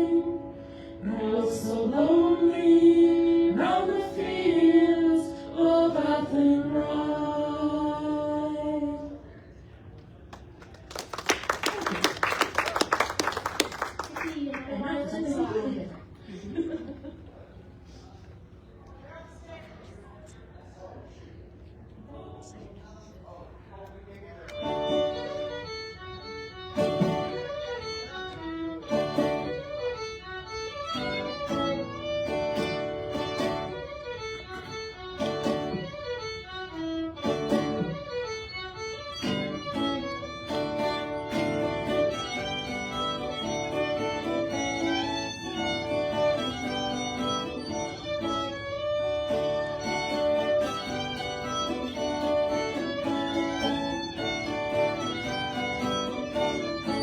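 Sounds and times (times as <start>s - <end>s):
fiddle playing folk music: 24.5s - 57.0s
guitar strumming chords: 24.6s - 57.0s.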